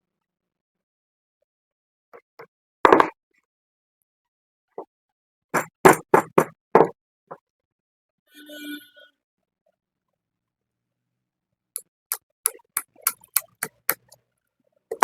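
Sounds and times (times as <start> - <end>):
squeak or scrape: 8.3 - 9.2
tools knocking and clicking: 11.8 - 14.1.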